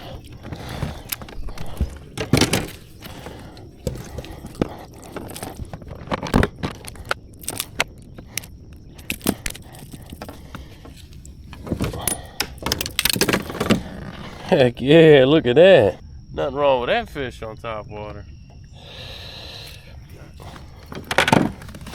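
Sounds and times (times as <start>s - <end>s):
fishing tackle clicks and rattles: 0.0s - 14.0s, 20.4s - 21.9s.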